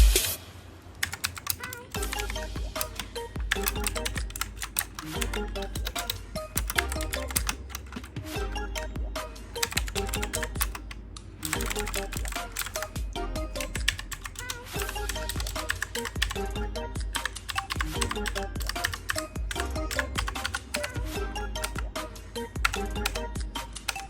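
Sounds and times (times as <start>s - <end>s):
mechanical keyboard typing: 1.0s - 8.2s, 9.6s - 13.0s, 13.6s - 16.4s, 17.0s - 21.9s, 22.6s - 24.0s
background music: 1.1s - 24.0s.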